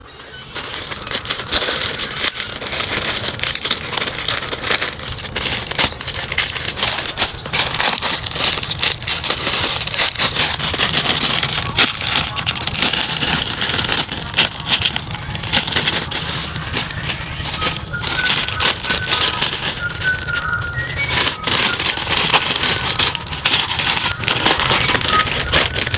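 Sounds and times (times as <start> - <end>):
plastic packaging crinkling: 0.0 - 25.9.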